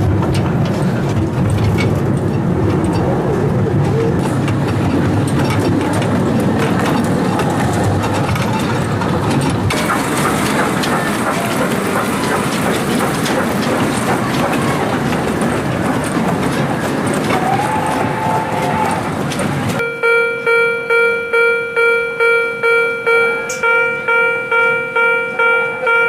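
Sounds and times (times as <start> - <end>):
mini train wheels clattering: 0.0 - 19.8.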